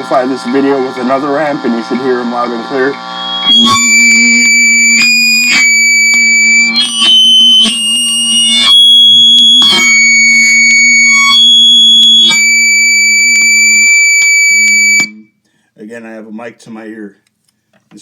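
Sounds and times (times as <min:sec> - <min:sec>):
high-pitched whistling tones: 0:02.8 - 0:15.2.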